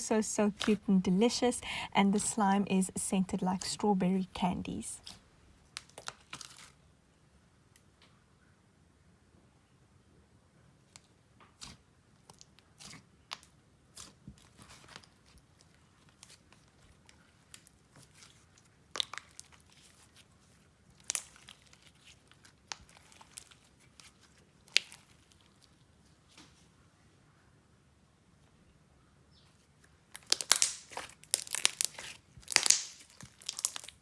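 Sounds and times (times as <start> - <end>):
slime squished by hand: 11.6 - 25.7, 30.1 - 34.0.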